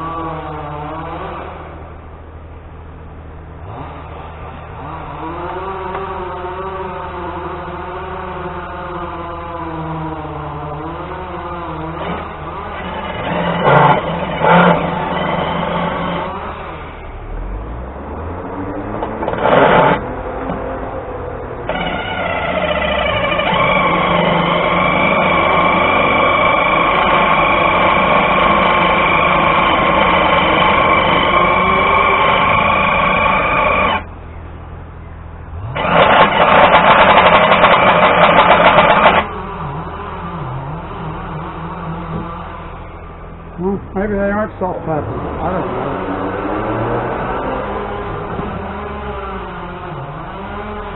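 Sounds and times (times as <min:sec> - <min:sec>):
distant chainsaws revving: 0:00.0 - 0:01.9, 0:03.6 - 0:34.1, 0:35.5 - 0:50.9
power drill running: 0:11.9 - 0:17.0, 0:19.2 - 0:20.0, 0:21.7 - 0:34.1, 0:35.7 - 0:39.4.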